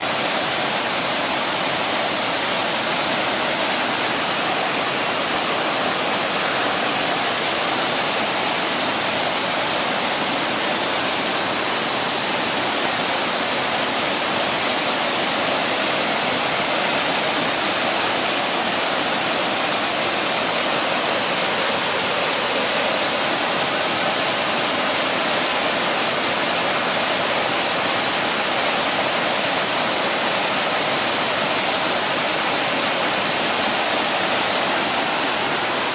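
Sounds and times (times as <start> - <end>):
running water rushing: 0.0 - 35.9.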